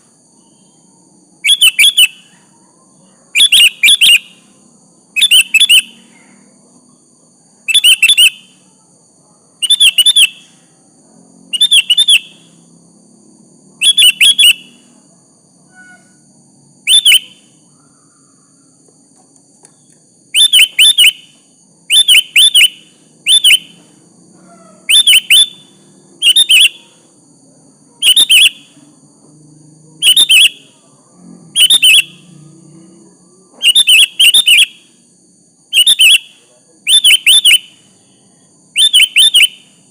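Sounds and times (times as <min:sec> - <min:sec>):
bulbul calling: 0:01.4 - 0:02.5, 0:03.3 - 0:04.5, 0:05.2 - 0:06.2, 0:07.7 - 0:08.6, 0:09.6 - 0:10.6, 0:11.5 - 0:12.5, 0:13.8 - 0:14.8, 0:16.9 - 0:18.0, 0:20.3 - 0:23.9, 0:24.5 - 0:27.0, 0:28.0 - 0:28.8, 0:30.0 - 0:30.8, 0:31.6 - 0:32.3, 0:33.6 - 0:34.9, 0:35.7 - 0:37.9, 0:38.8 - 0:39.7.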